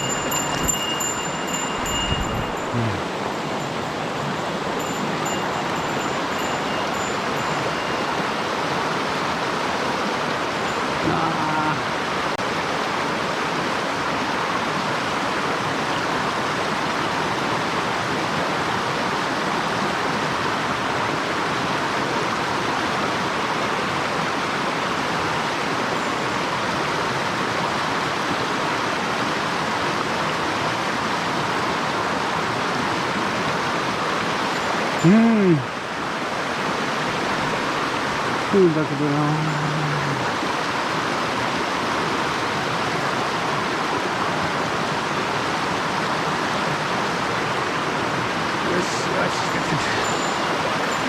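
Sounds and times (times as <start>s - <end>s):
stream rushing over rocks: 0.0s - 51.0s
brief voiced sound: 2.8s - 3.0s.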